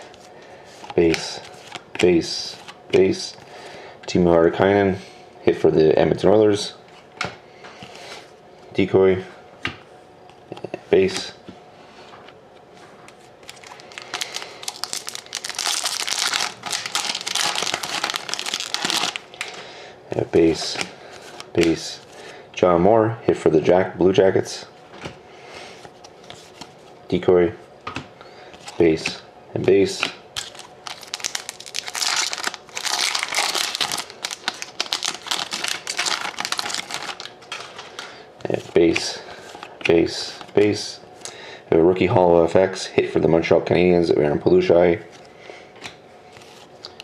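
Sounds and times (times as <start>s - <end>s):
foil wrapper tearing and crinkling: 13.4s - 19.5s, 30.4s - 37.8s.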